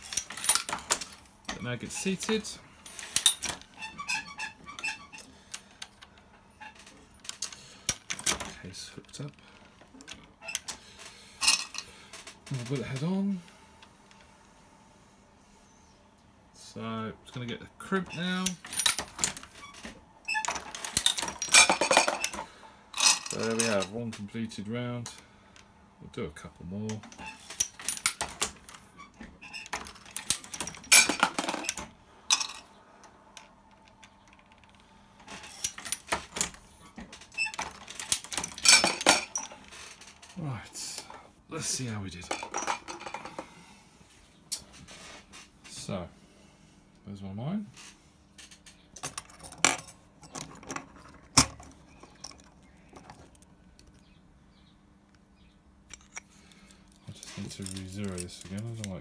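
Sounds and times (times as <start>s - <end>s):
brass cases clattering: 0.0s - 1.2s, 2.0s - 4.2s, 6.8s - 8.5s, 11.4s - 11.9s, 18.1s - 19.5s, 20.4s - 23.9s, 27.0s - 28.7s, 29.6s - 32.7s, 35.3s - 36.6s, 37.2s - 40.2s, 42.2s - 43.5s, 49.0s - 54.1s, 55.9s - 58.8s
metallic clicks of cartridges handled: 55.9s - 58.8s.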